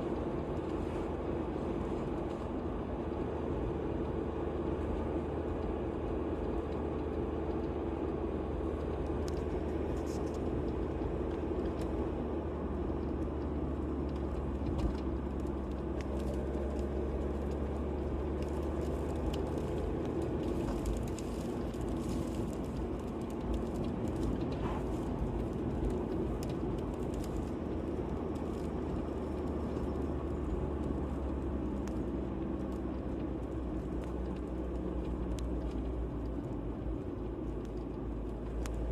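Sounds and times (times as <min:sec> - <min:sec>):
vehicle engine and road rumble: 0:00.0 - 0:38.9.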